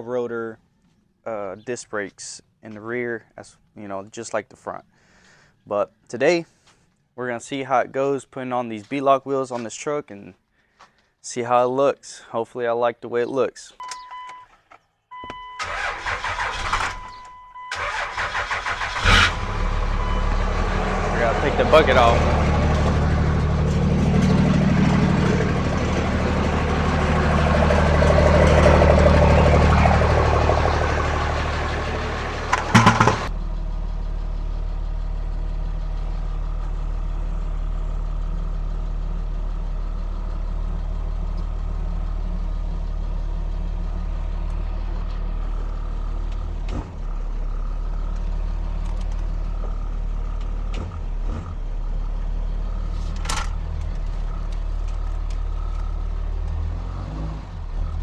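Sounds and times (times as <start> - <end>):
engine clatter: 17.7 - 58.0
vehicle engine idling: 17.8 - 58.0.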